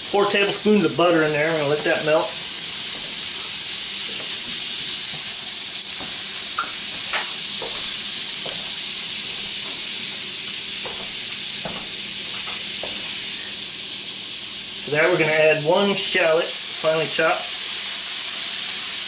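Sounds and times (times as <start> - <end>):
butter sizzling in frying pan: 0.0 - 19.0.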